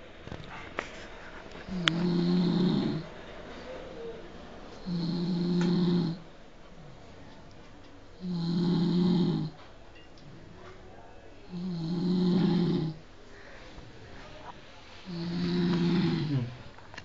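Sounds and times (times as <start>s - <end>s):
person snoring: 1.7s - 3.1s, 4.8s - 6.2s, 8.2s - 9.5s, 11.5s - 13.0s, 15.0s - 16.6s.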